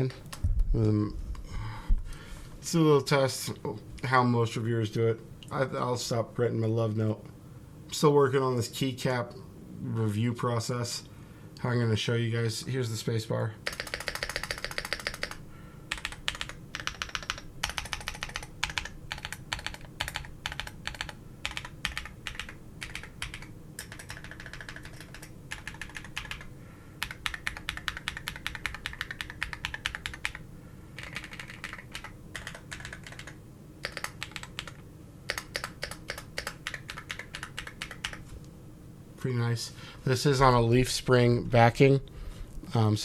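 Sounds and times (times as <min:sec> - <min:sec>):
mechanical keyboard clacking: 0:13.6 - 0:30.4, 0:31.0 - 0:38.2.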